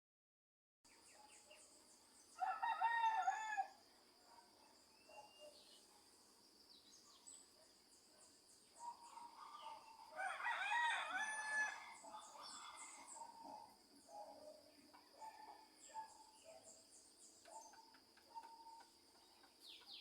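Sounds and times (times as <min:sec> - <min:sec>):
rooster crowing: 0:02.4 - 0:03.8, 0:09.6 - 0:13.2
faint bird chirps: 0:04.2 - 0:10.1, 0:11.7 - 0:20.0.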